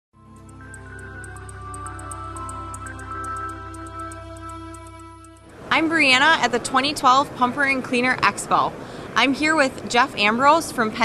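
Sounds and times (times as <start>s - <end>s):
soft synth music: 0.2s - 6.4s
high ticking beat: 0.2s - 6.8s.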